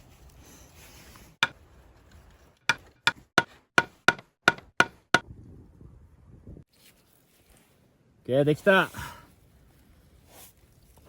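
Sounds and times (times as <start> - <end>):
wood being struck: 2.7 - 5.2.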